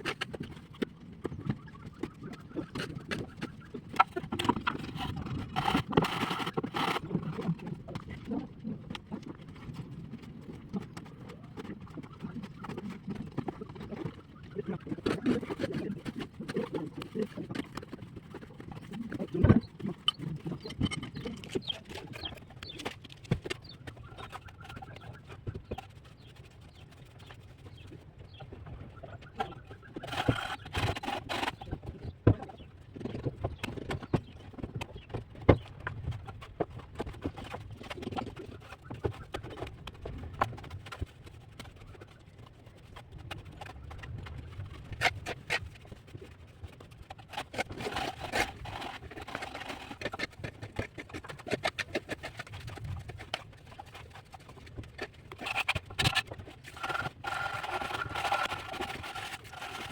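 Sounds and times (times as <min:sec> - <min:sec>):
trowel scraping: 0:47.3 - 0:59.9.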